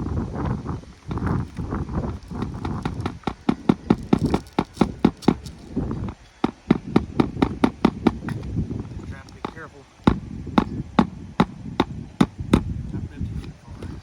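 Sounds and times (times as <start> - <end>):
hammer driving nails into shingles: 2.1 - 8.5, 9.2 - 12.7.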